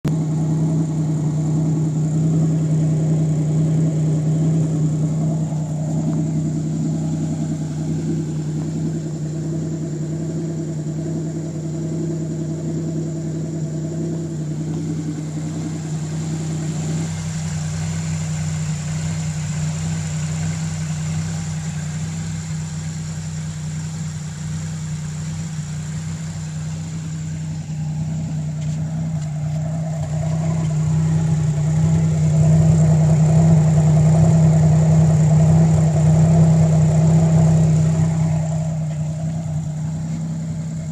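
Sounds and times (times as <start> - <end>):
car engine at high idle: 0.0 - 40.9.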